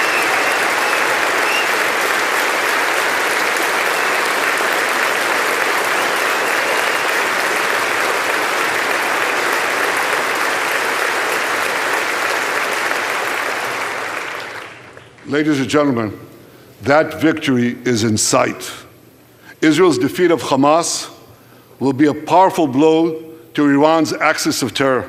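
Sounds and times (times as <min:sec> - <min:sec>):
audience applauding: 0:00.0 - 0:15.2.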